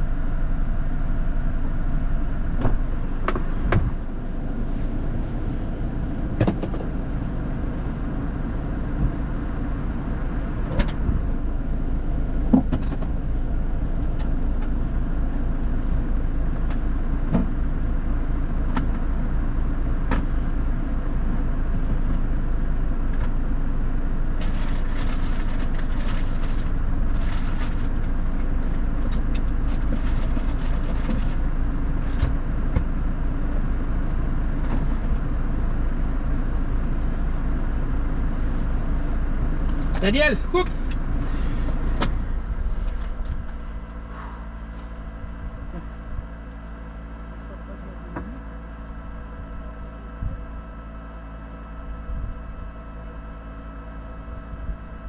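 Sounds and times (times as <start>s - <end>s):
off-road vehicle engine running: 0.0s - 55.0s
knocks and clunks over rough ground: 2.4s - 4.4s, 6.1s - 7.8s, 10.6s - 11.5s, 12.4s - 13.4s, 16.5s - 17.7s, 23.1s - 33.1s, 39.6s - 55.0s.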